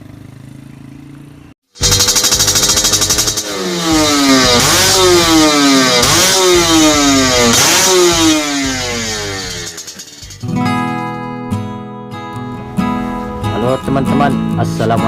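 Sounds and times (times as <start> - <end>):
motorcycle engine revving: 0.0 - 10.5.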